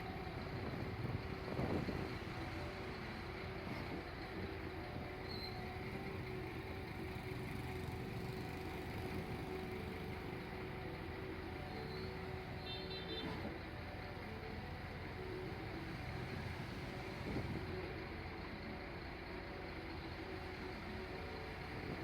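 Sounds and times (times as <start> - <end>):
truck engine drone: 0.0 - 22.0.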